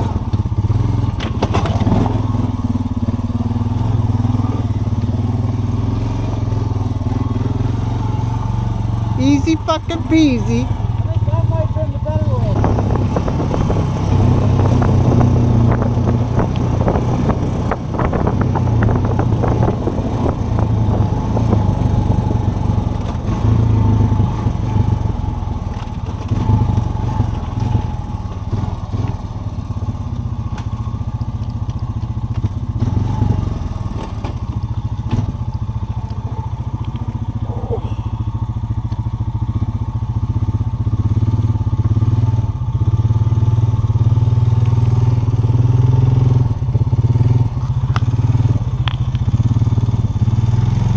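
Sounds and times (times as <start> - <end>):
rattling and crunching over ground: 0.0 - 5.4, 10.2 - 38.1
off-road vehicle engine running: 0.0 - 50.9.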